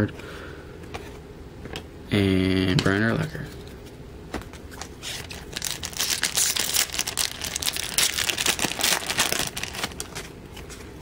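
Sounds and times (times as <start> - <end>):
wrapper crinkling: 5.0 - 10.4.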